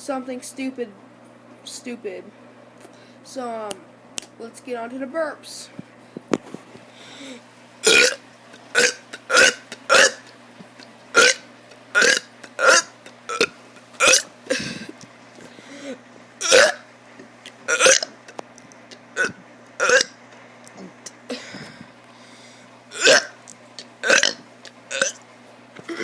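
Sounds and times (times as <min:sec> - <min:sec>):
child burping: 0:07.8 - 0:08.2, 0:08.8 - 0:10.2, 0:12.0 - 0:14.9, 0:16.4 - 0:16.8, 0:17.7 - 0:18.1, 0:19.2 - 0:20.1, 0:23.0 - 0:23.4, 0:24.0 - 0:25.2.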